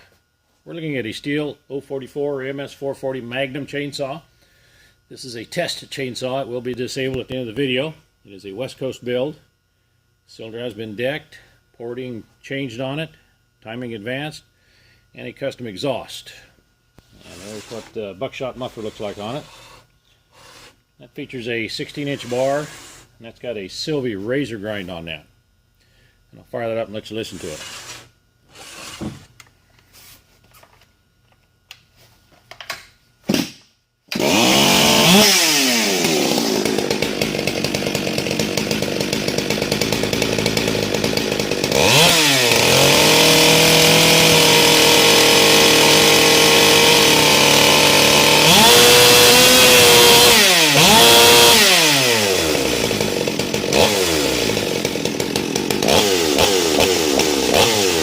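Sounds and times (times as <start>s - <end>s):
chainsaw revving: 17.2s - 17.9s, 22.0s - 23.1s, 34.1s - 58.0s
chainsaw starter pulls: 34.1s - 58.0s.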